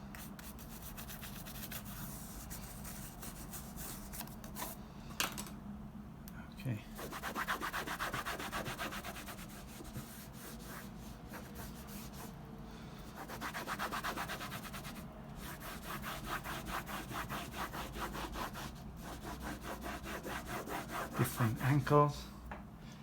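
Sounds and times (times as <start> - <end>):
brush scrubbing a textured surface: 0.2 - 4.2, 6.9 - 12.4, 13.0 - 22.0.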